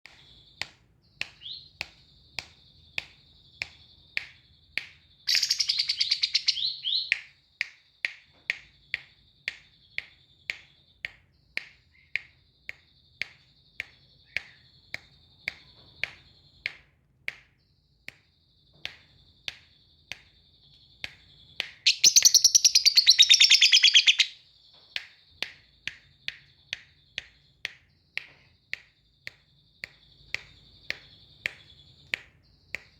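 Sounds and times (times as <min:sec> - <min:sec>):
lovebird chirping: 0:05.2 - 0:07.1, 0:21.8 - 0:24.4
lovebird trilling chatter: 0:05.3 - 0:07.0, 0:21.9 - 0:24.4.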